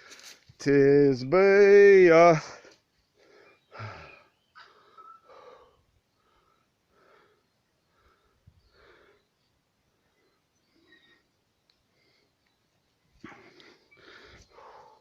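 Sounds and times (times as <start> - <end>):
man breathing: 2.6 - 9.4, 13.2 - 15.0.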